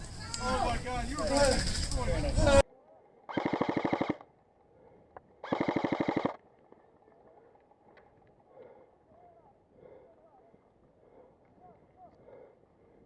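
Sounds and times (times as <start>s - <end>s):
airsoft gun full-auto bursts: 3.3s - 4.2s, 5.4s - 6.4s.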